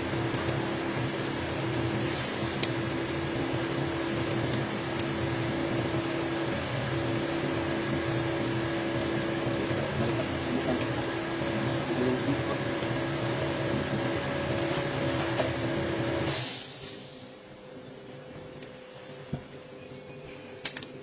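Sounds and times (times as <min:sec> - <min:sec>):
motor humming: 0:00.0 - 0:16.3
brief hiss: 0:16.3 - 0:17.3.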